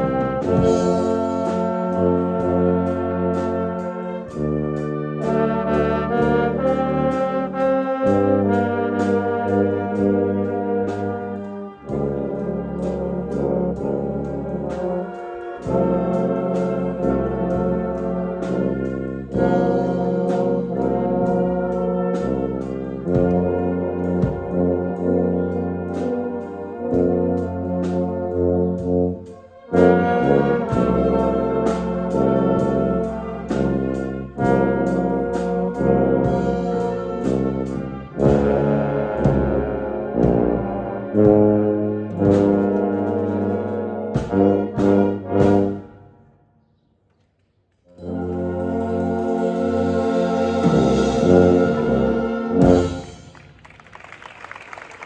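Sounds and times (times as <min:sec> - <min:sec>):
tuba bass line: 0:00.0 - 0:46.2, 0:48.0 - 0:53.4
concert band brass chords: 0:00.0 - 0:46.4, 0:47.8 - 0:55.0.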